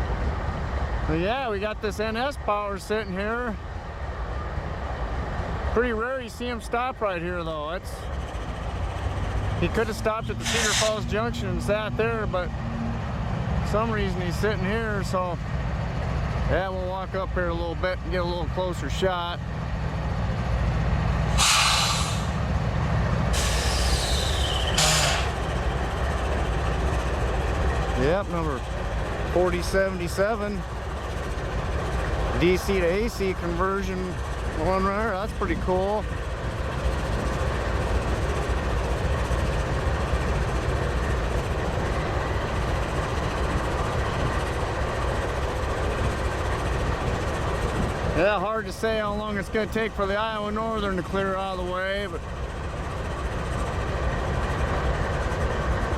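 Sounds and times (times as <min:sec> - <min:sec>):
diesel locomotive idling: 0:00.0 - 0:55.9
loud air hiss: 0:10.4 - 0:11.0, 0:21.3 - 0:22.4, 0:23.3 - 0:25.4.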